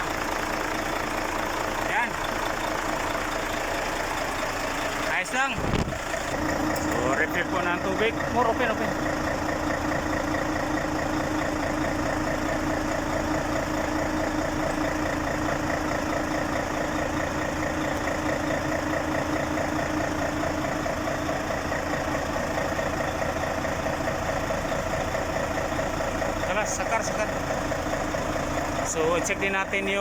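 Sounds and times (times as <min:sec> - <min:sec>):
truck diesel engine idling: 0:00.0 - 0:30.0.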